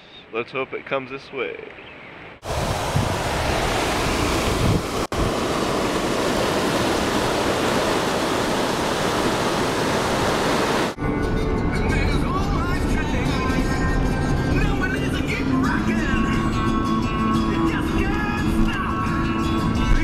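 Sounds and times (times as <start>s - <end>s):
river rushing over rapids: 2.4s - 11.0s.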